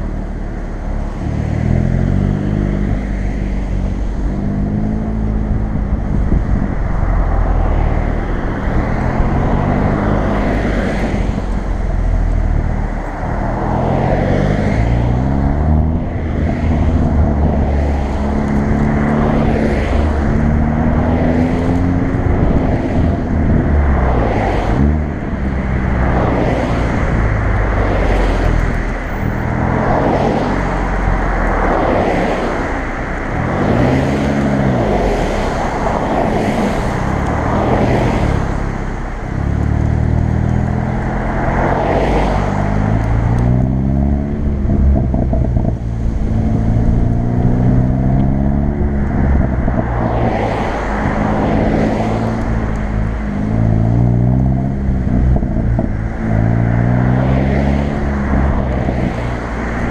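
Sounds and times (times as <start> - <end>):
car engine revving: 0.0 - 59.9
exhaust pops and crackles: 54.9 - 56.5.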